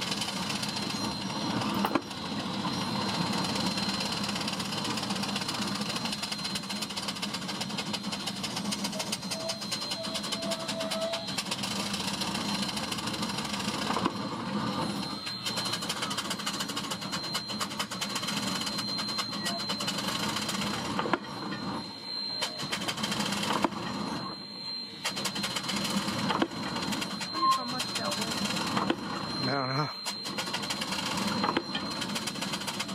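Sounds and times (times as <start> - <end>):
high steady machine whine: 0.0 - 32.9
pile driver machinery ticking: 0.0 - 32.9
people talking: 27.2 - 28.6, 29.3 - 30.1.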